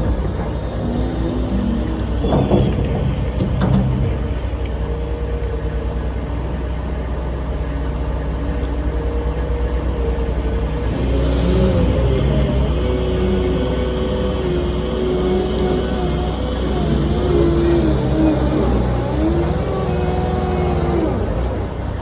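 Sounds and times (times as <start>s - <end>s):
vehicle engine revving: 10.4s - 22.0s.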